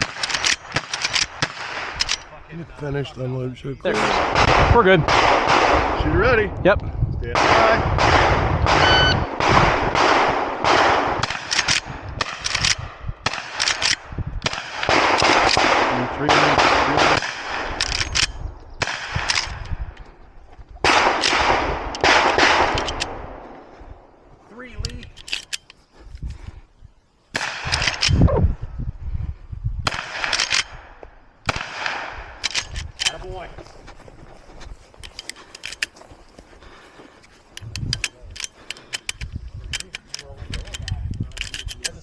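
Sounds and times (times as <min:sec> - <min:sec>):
rifle shots: 0:00.0 - 0:02.3, 0:03.9 - 0:06.3, 0:07.4 - 0:19.6, 0:20.8 - 0:23.6, 0:27.3 - 0:28.2, 0:29.8 - 0:33.4.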